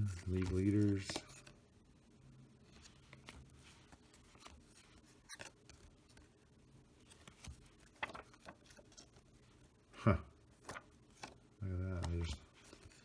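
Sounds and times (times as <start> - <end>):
cards sliding by hand: 0.0 - 1.6, 2.6 - 6.4.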